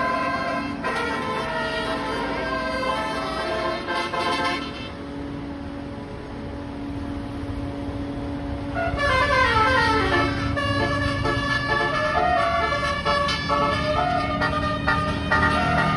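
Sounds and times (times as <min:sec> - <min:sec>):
multi-note bus air horn: 0:00.0 - 0:05.1, 0:08.7 - 0:15.9
bus engine running: 0:00.0 - 0:15.9.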